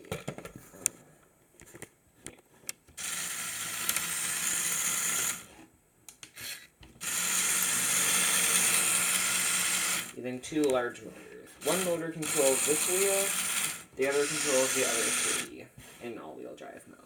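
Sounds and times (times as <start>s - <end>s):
electric motors whirring: 3.0s - 5.6s, 7.0s - 10.2s, 11.6s - 15.5s.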